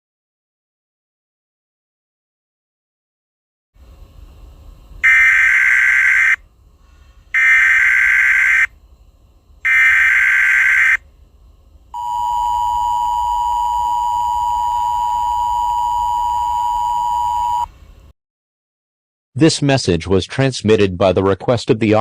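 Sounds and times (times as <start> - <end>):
shrill warbling data tones: 5.0 - 6.4, 7.4 - 8.7, 9.7 - 11.0
two-tone attention signal: 12.0 - 17.7.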